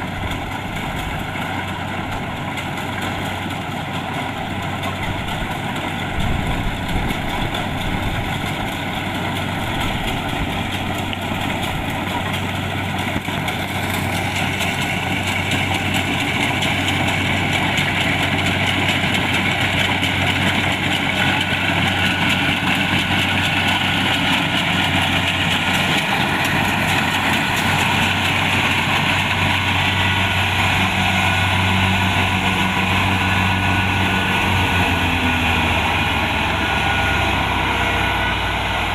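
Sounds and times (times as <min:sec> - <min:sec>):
combine harvester running: 0:00.0 - 0:38.9.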